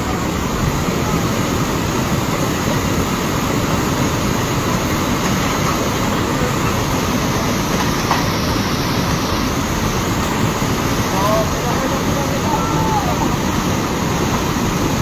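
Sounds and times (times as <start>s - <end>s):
rushing floodwater roar: 0.0s - 15.0s.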